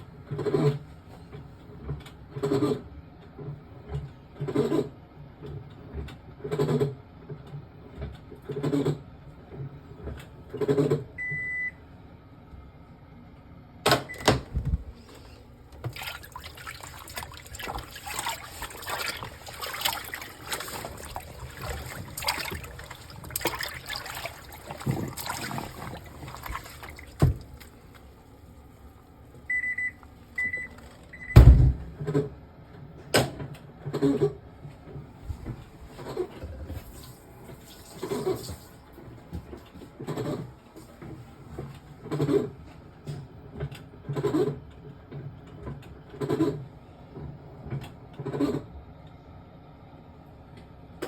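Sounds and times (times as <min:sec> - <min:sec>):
water sloshing: 0:14.2 - 0:29.0.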